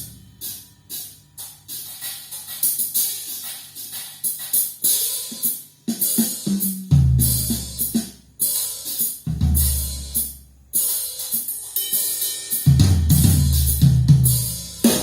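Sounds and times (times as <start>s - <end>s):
drum kit hits with cymbals: 0.0s - 15.0s.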